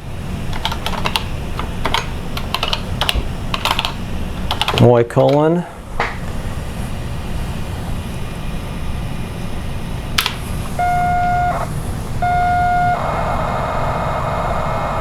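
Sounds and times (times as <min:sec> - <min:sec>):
short steady tones: 0:10.7 - 0:15.0
warbling data tone: 0:10.8 - 0:15.0.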